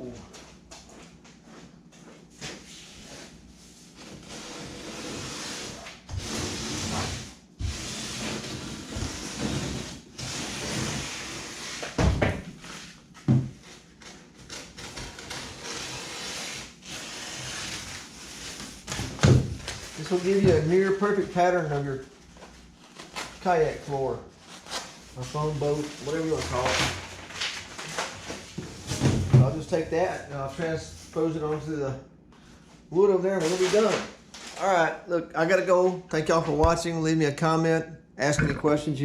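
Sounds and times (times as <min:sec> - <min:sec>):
paper rustling and crinkling: 0:24.4 - 0:28.6.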